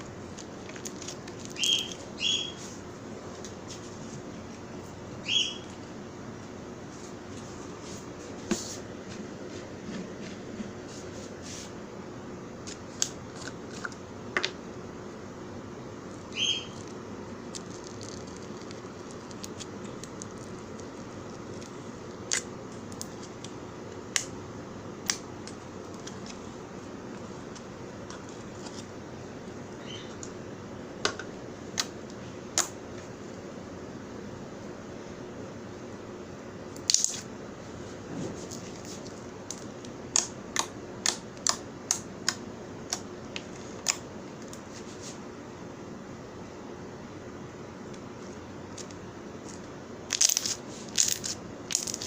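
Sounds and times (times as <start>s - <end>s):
low hiss with faint hum: 0.0s - 52.0s.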